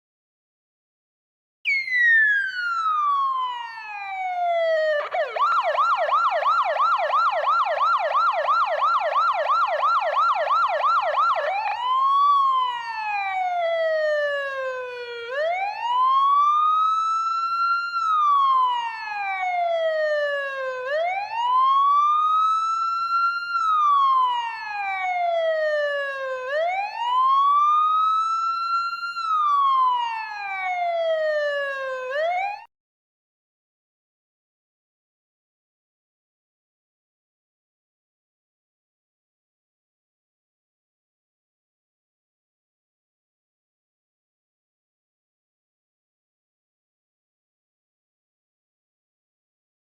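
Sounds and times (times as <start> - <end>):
ambulance siren: 1.7 - 32.7.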